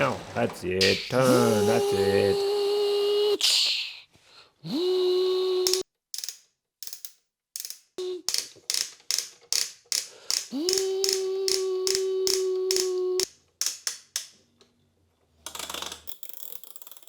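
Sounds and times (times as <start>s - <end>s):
toy mechanism whirring: 0.0s - 3.8s, 4.8s - 14.3s, 15.5s - 17.0s
ratchety clicks: 5.7s - 13.0s.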